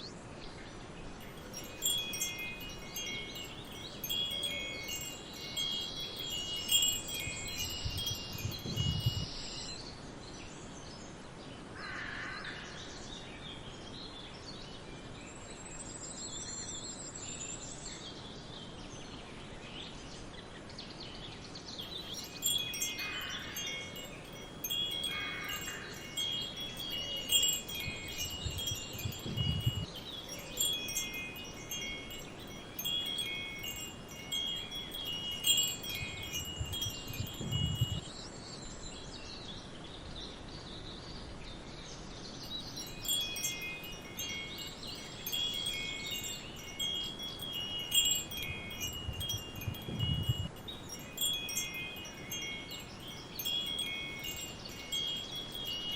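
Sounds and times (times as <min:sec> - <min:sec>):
soft forest ambience: 0:00.0 - 0:55.9
wind chimes ringing: 0:01.2 - 0:09.8, 0:21.8 - 0:38.1, 0:42.4 - 0:55.9.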